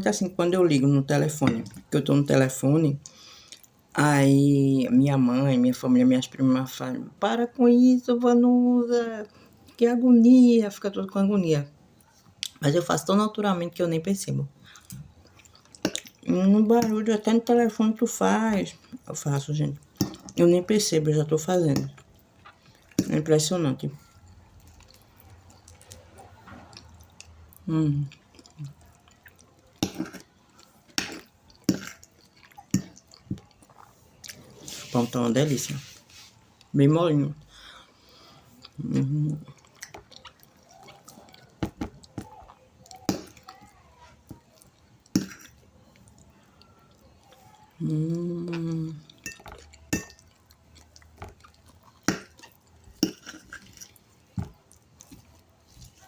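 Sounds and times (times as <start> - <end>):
person chewing soft food: 14.6 - 16.3, 21.8 - 23.2, 23.9 - 35.0, 37.5 - 56.0.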